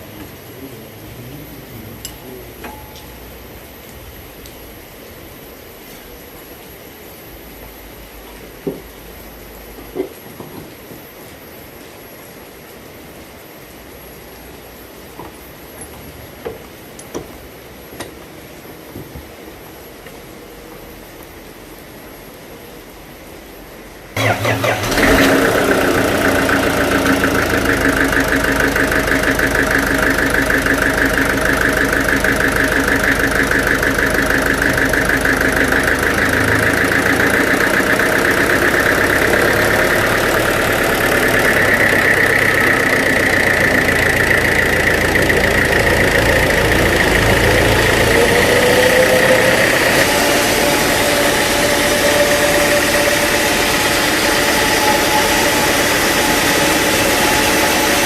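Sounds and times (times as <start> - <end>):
engine running with knocking pulse: 24.2 - 58.0
rising tone: 24.8 - 58.0.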